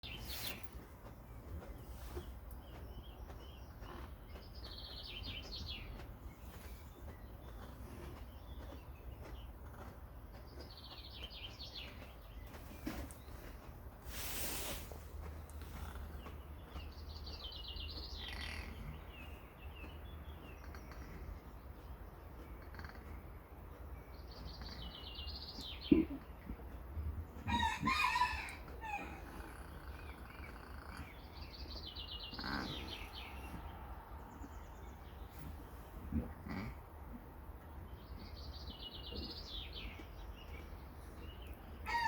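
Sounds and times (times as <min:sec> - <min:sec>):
rooster crowing: 0:27.5 - 0:29.1.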